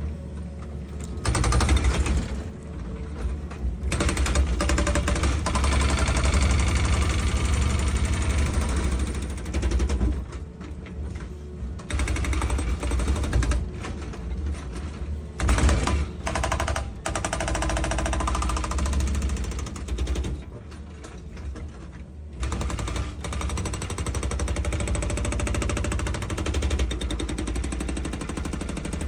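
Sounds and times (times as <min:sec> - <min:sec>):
fast mechanical rattle: 0:01.2 - 0:02.5, 0:03.8 - 0:10.2, 0:11.8 - 0:20.4, 0:22.4 - 0:29.0
excavator engine rumble: 0:20.0 - 0:22.4.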